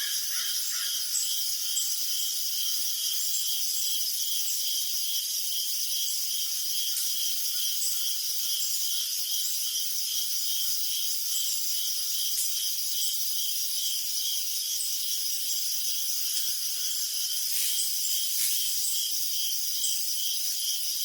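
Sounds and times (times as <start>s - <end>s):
crickets chirping: 0.0s - 21.0s
high-pitched insect chorus: 0.0s - 21.0s.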